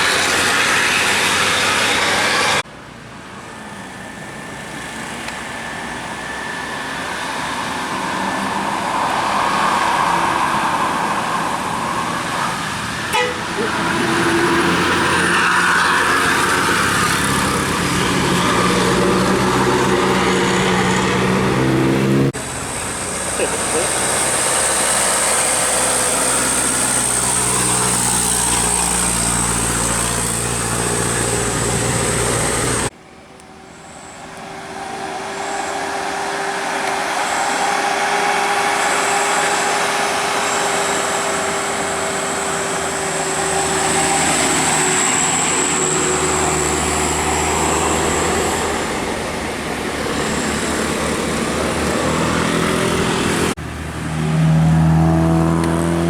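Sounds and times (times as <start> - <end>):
bus engines running: 0.0 - 56.0.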